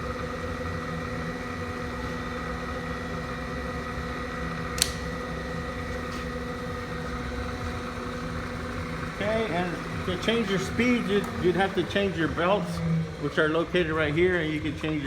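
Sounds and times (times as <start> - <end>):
milling machine humming: 0.0 - 15.0
sharp click: 4.8 - 5.2.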